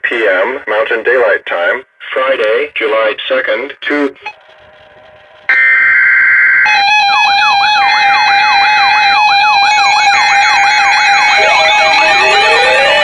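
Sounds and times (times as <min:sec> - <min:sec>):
steady high tone: 0:05.5 - 0:13.0
warbling alert tone: 0:10.2 - 0:13.0.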